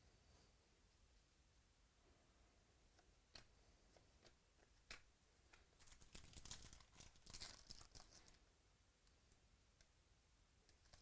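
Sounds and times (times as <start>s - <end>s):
card pack wrapper crinkling: 5.8s - 8.4s
wrapper crackles: 5.8s - 8.4s.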